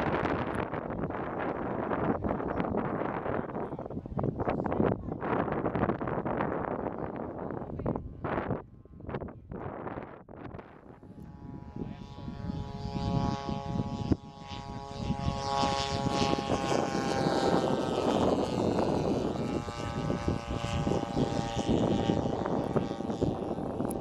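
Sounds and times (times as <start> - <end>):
model airplane motor buzzing: 10.7 - 24.0.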